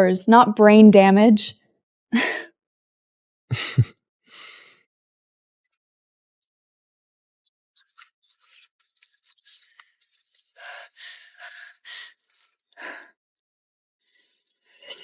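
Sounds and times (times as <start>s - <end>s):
paper rustling: 7.8s - 11.4s.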